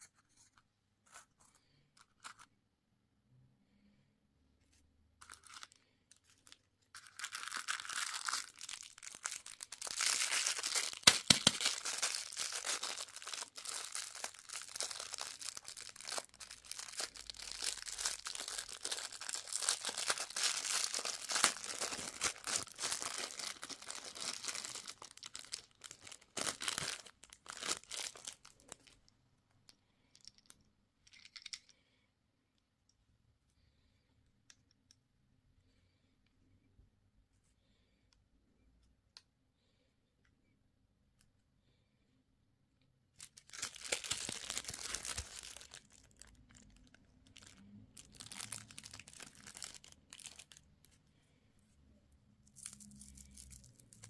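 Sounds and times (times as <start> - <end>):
candy wrapper crinkling: 5.2 - 29.1, 43.2 - 51.0, 52.4 - 54.0.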